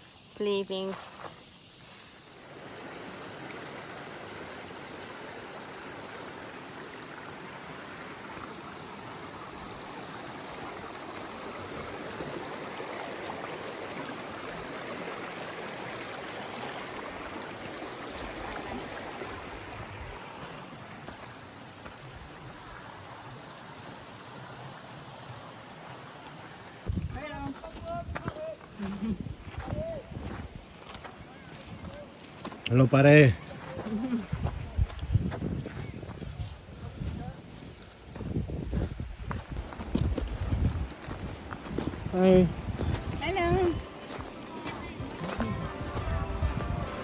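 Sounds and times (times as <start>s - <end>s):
stream water rushing: 1.5s - 27.4s, 39.7s - 47.0s.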